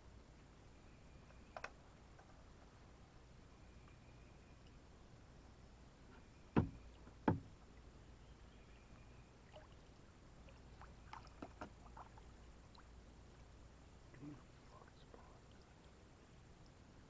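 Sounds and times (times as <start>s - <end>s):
loud knocks on a kayak: 6.6s - 7.5s.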